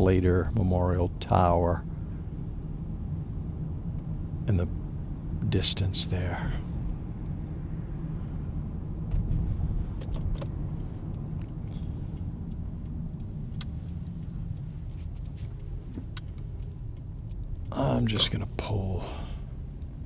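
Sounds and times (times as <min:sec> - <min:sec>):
car driving low rumble: 0:00.0 - 0:20.0
light clicks and rattles: 0:09.1 - 0:18.8.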